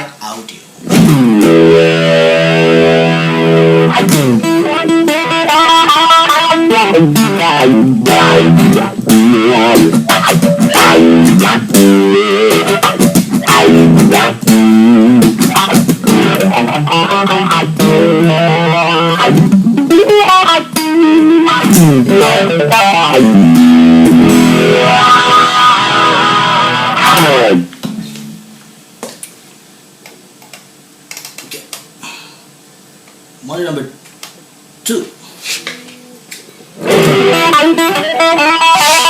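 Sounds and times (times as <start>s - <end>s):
overdriven electric guitar with wah: 0.8s - 28.4s, 36.1s - 39.0s.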